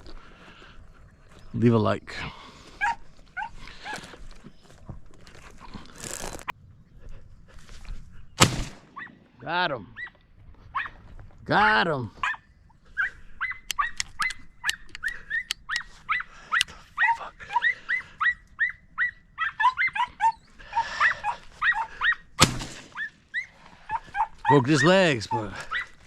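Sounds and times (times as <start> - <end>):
dogs yelping: 2.7 - 4.2, 8.8 - 11.2, 12.2 - 26.0
gunshot: 8.4 - 9.0, 22.4 - 23.0.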